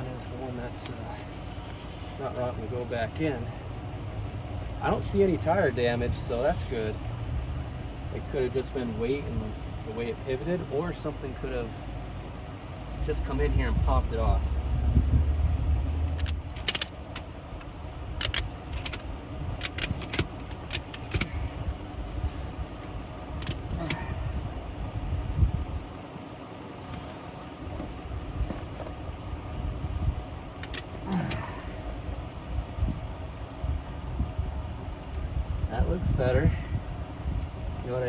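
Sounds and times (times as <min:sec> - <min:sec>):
low mechanical hum: 0:00.0 - 0:38.0
ratchet strap clicking: 0:16.1 - 0:17.3, 0:18.2 - 0:19.0, 0:19.6 - 0:21.3, 0:23.4 - 0:24.0, 0:30.6 - 0:31.5.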